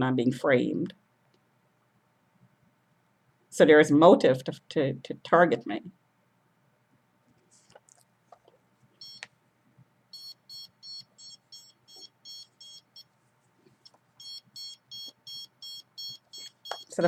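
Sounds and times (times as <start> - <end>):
high-pitched alarm beeping: 9.0 - 9.2, 10.1 - 13.0, 14.2 - 17.0.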